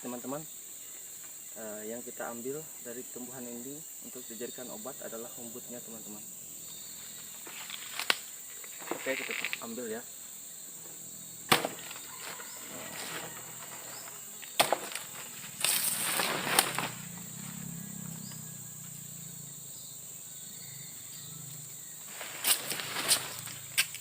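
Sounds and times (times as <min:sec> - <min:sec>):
crickets chirping: 0:00.0 - 0:24.0
rustle of plants: 0:06.8 - 0:10.0, 0:11.5 - 0:19.0, 0:21.8 - 0:24.0
sharp snaps: 0:07.9 - 0:08.3, 0:22.4 - 0:24.0.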